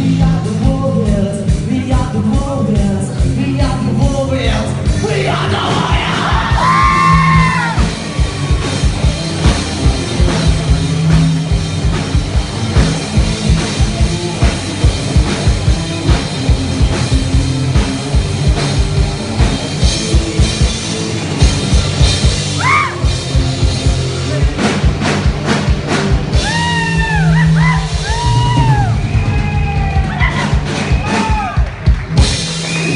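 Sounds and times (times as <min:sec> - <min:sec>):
rock band playing live: 0:00.0 - 0:32.9.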